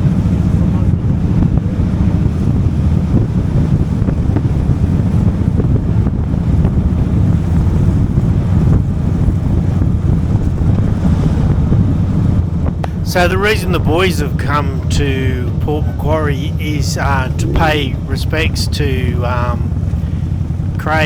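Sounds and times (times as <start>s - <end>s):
wind buffeting microphone: 0.0s - 13.8s.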